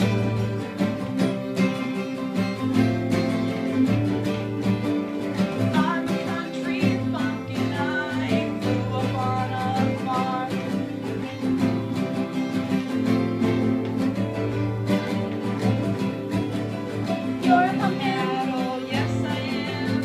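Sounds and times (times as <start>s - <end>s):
acoustic guitar strumming: 0.0s - 20.0s.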